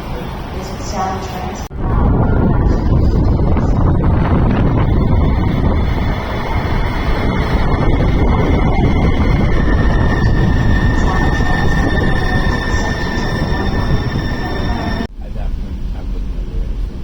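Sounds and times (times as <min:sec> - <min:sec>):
distorted rumbling noise: 0:00.0 - 0:17.0
steady high whining tone: 0:01.8 - 0:17.0.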